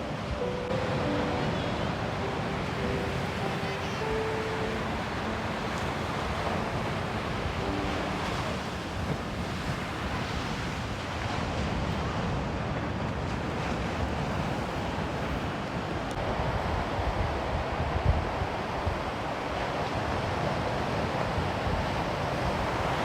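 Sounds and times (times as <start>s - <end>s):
faint held tones: 0.0s - 8.8s
sea surf: 0.0s - 23.0s
wind buffeting microphone: 0.0s - 23.0s.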